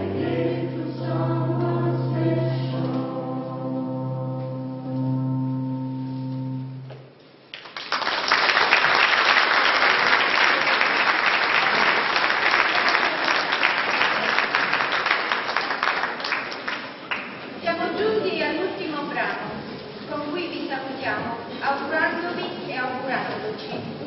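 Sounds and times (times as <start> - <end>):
choir singing sustained chord: 0.0 - 6.8
audience applause: 7.5 - 17.4.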